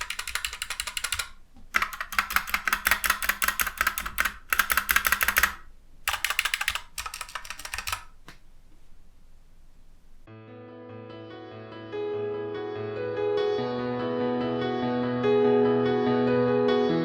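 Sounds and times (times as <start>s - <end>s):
mechanical keyboard typing: 0.0s - 8.4s.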